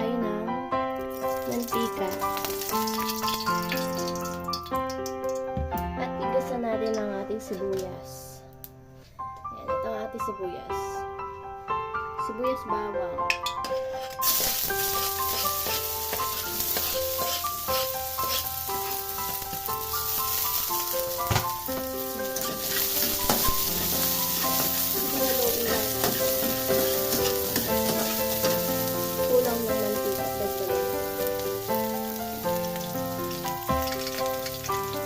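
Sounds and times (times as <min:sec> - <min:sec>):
background music: 0:00.0 - 0:35.0
onion and garlic sizzling in oil: 0:01.0 - 0:05.2, 0:14.0 - 0:35.0.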